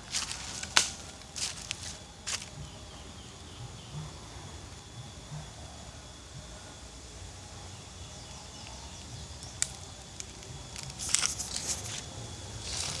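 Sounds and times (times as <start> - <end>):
crackling rustles: 0.0 - 2.7, 8.6 - 13.0.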